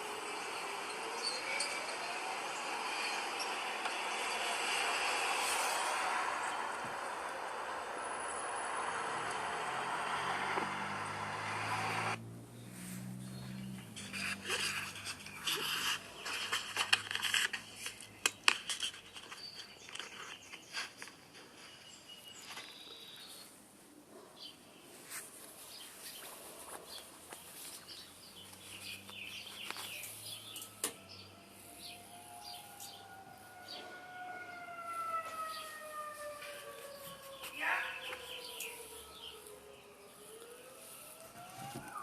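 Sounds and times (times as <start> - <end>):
tornado warning siren: 0.0 - 12.4, 29.6 - 42.0
bird chirps and clicks: 16.2 - 21.1.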